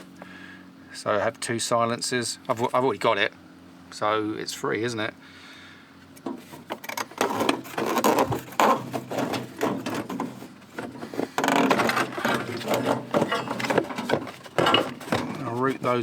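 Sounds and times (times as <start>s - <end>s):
parts knocking and rattling by hand: 6.2s - 16.0s.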